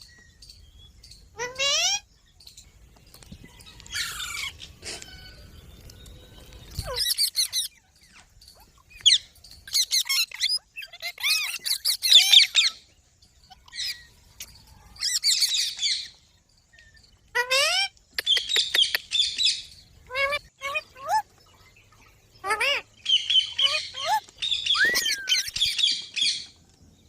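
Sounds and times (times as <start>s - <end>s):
parrot squawking: 1.4s - 2.0s, 17.4s - 21.2s, 22.4s - 25.9s.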